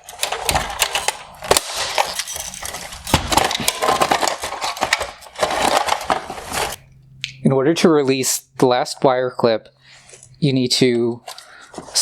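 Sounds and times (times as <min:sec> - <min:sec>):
plastic clicking and crunching: 0:00.0 - 0:07.4, 0:11.2 - 0:12.0.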